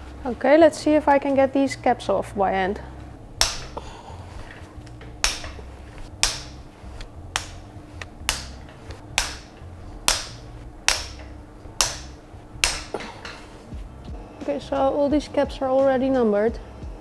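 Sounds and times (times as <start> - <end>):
finger snaps beat: 3.4 - 4.0, 4.8 - 13.1.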